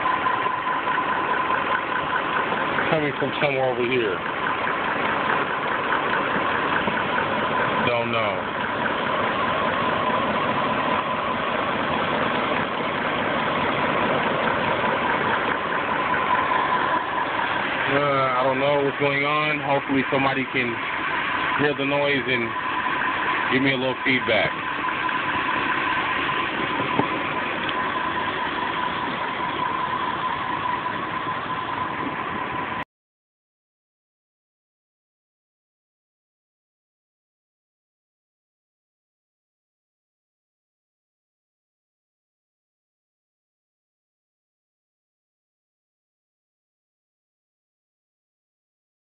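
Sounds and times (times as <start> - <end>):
car engine idling: 0.0 - 32.8
constant high tone: 14.6 - 32.8.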